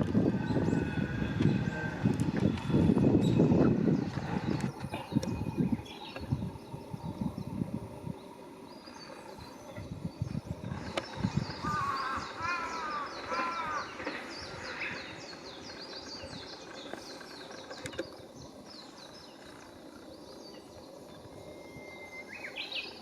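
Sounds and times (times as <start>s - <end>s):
birds calling: 8.2s - 21.2s.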